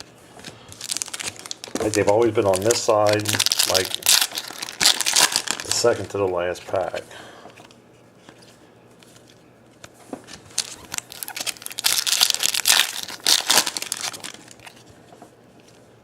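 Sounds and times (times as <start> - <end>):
foil wrapper crinkling and tearing: 0.7 - 6.9, 10.5 - 14.8.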